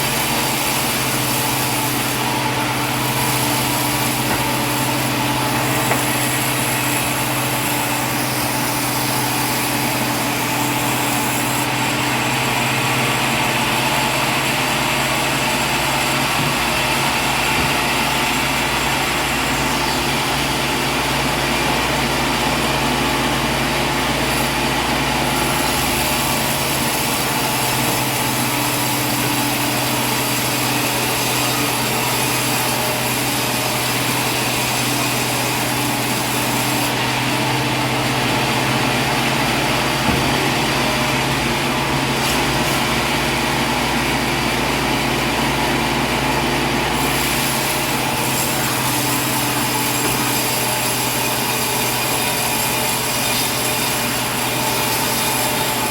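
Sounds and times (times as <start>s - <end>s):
short knock: 40.0s - 40.6s.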